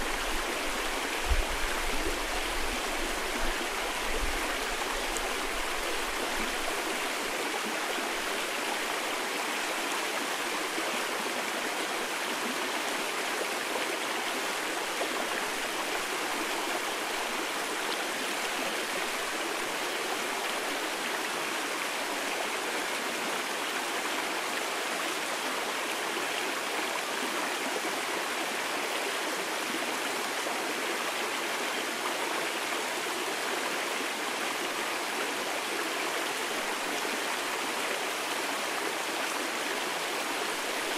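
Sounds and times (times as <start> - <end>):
stream flowing: 0.0 - 40.9.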